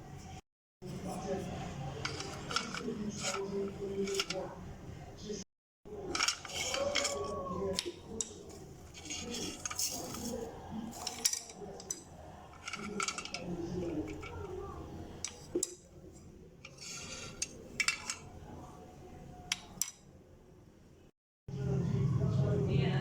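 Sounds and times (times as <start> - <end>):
utensils clinking on dishes: 1.8 - 4.6, 5.9 - 18.8, 19.4 - 20.1.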